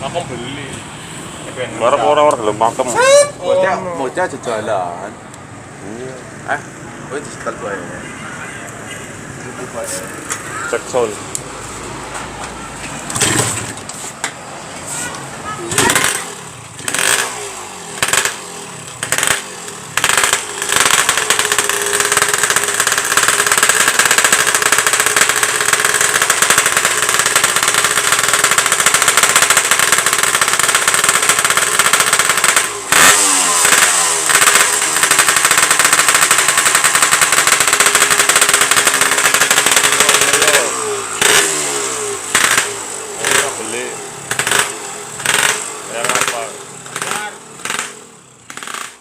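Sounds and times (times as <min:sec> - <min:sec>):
two-stroke engine revving: 0:13.1 - 0:13.8, 0:15.1 - 0:49.0.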